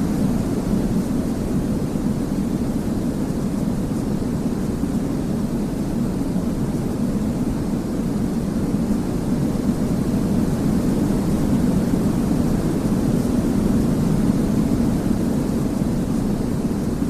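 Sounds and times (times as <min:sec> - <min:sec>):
deep white noise hiss: 0:00.0 - 0:17.0.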